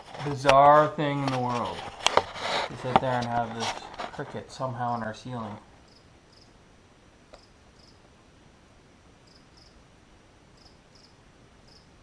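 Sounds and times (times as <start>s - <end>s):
low steady hiss: 0.0s - 12.0s
cricket chirping: 5.8s - 6.6s, 7.3s - 8.0s, 9.2s - 9.8s, 10.5s - 12.0s.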